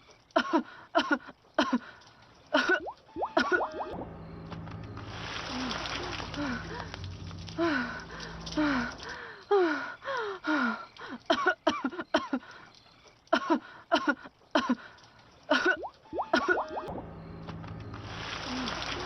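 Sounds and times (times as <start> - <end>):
woman coughing: 11.3 - 12.4, 13.4 - 14.8.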